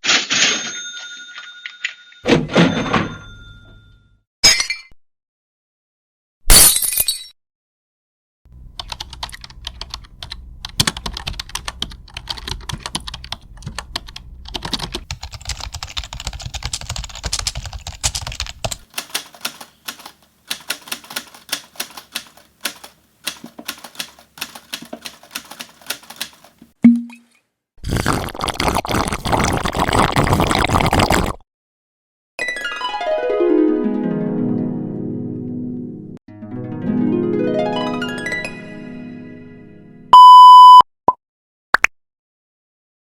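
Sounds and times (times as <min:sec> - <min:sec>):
computer keyboard typing: 0:08.8 - 0:26.7.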